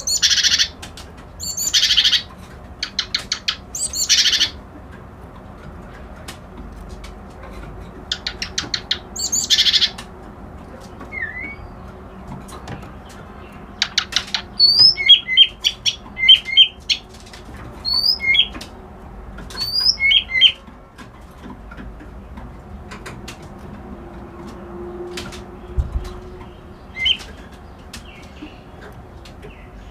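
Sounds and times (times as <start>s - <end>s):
warbler singing: 0.0s - 4.6s, 8.1s - 10.1s, 10.9s - 18.7s, 19.4s - 20.7s, 25.5s - 29.9s.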